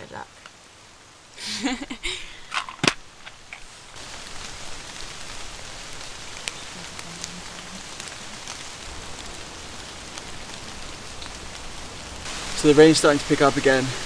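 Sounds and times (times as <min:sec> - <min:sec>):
steady rain falling: 0:00.0 - 0:14.0
raindrop ticks: 0:02.9 - 0:14.0.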